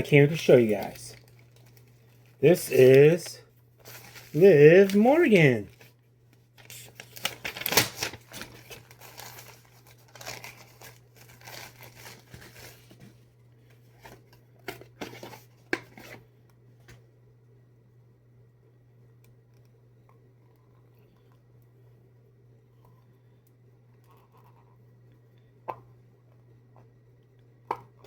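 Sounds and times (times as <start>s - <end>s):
packaging crinkling and rustling: 0.2s - 5.9s, 6.6s - 13.1s
packaging being torn open: 6.6s - 12.7s.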